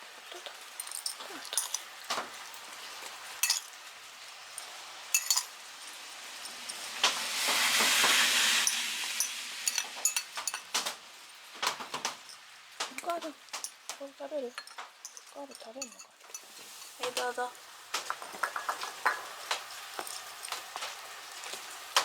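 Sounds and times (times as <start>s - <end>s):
hiss: 0.0s - 11.8s, 16.3s - 22.0s
light clinks and taps: 4.6s - 5.5s, 9.2s - 10.9s, 12.0s - 16.5s, 19.9s - 21.6s.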